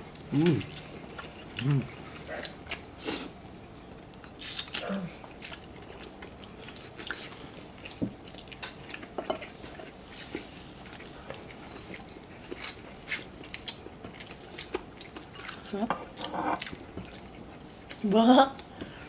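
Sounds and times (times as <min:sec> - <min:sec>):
wet chewing and lip smacks: 0:00.1 - 0:09.2, 0:10.1 - 0:15.7.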